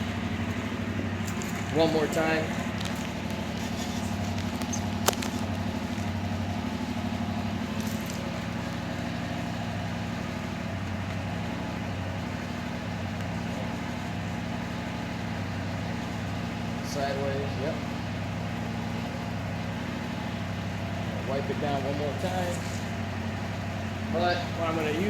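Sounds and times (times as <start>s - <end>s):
motorcycle engine idling: 0.0s - 25.0s.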